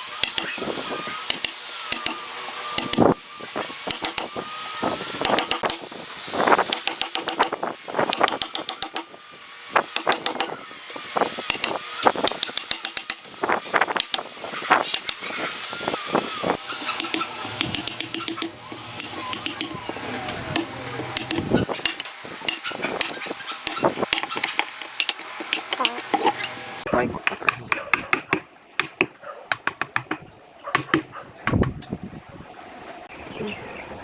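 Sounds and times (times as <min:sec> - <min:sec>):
sharp clicks and taps: 0:00.2 - 0:00.6, 0:01.3 - 0:02.2, 0:02.8 - 0:03.2, 0:03.9 - 0:04.3, 0:05.2 - 0:05.9, 0:06.6 - 0:09.1, 0:09.9 - 0:10.5, 0:11.5 - 0:13.2, 0:13.9 - 0:15.3, 0:17.0 - 0:19.8, 0:20.6 - 0:26.6, 0:27.3 - 0:30.2, 0:30.8 - 0:31.8.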